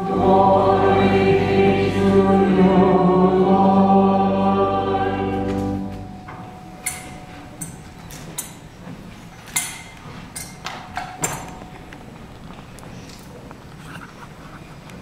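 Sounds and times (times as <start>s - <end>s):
choir singing: 0.0s - 6.3s.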